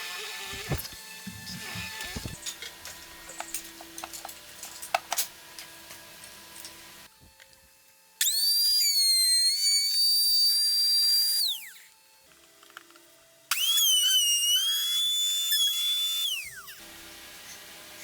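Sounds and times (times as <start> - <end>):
saw motor whining: 0.0 - 4.0.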